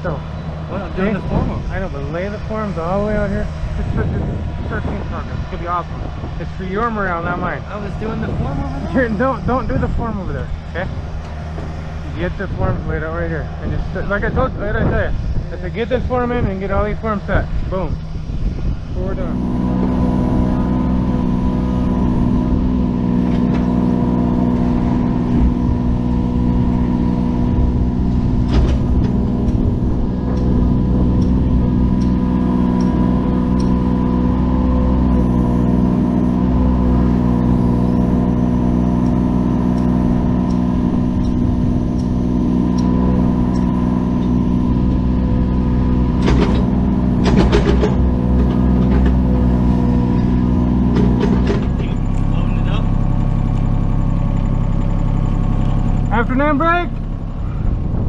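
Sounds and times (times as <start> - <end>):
engine running steadily: 0.0 - 58.0
short metallic knocks: 46.1 - 52.2.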